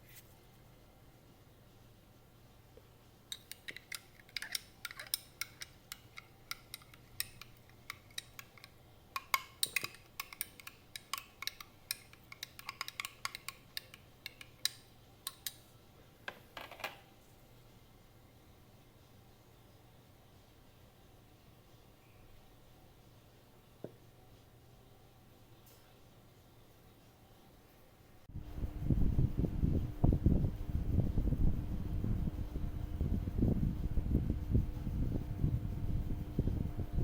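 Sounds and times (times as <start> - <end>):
kitchen utensils clinking: 3.3 - 15.6.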